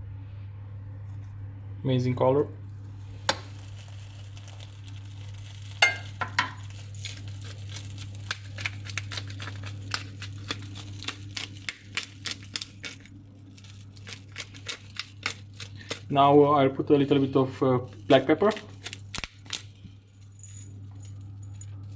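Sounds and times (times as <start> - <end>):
steady low hum: 0.0 - 21.9
spoon clicking and scraping: 3.3 - 16.1.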